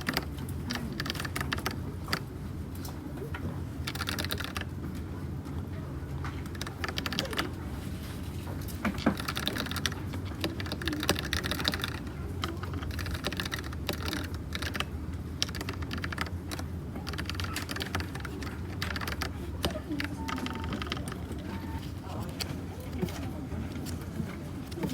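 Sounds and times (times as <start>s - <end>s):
mechanical keyboard typing: 0.0s - 2.3s, 3.8s - 4.8s, 6.3s - 7.6s, 9.0s - 22.5s.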